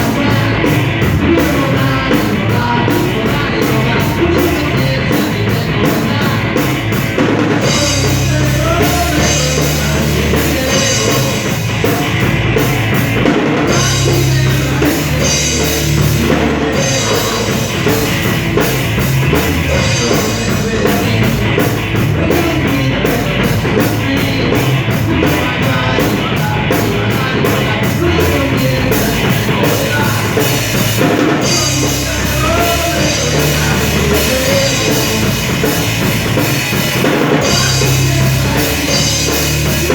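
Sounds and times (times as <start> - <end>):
loud rock music: 0.0 - 39.9.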